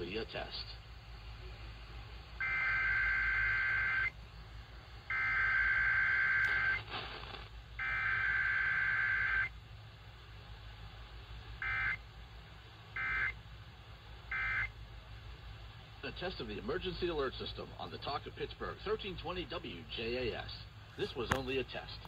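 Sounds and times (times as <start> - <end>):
shrill two-tone data warble: 2.4 - 4.2, 5.1 - 6.8, 7.8 - 9.5.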